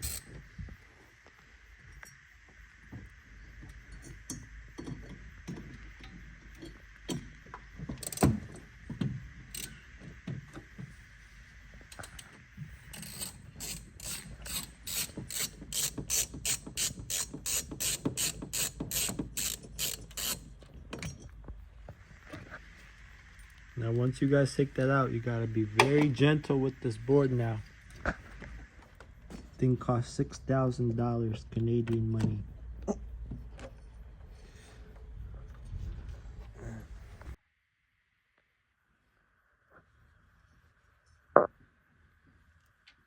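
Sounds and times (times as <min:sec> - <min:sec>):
ratcheting hand driver clicking: 0:08.0 - 0:08.5, 0:12.9 - 0:21.1.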